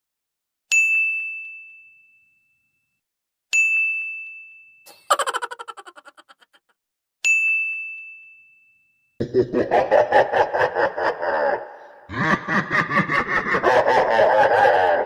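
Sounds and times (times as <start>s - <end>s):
laughing sound effect: 4.9s - 6.7s, 9.2s - 15.0s.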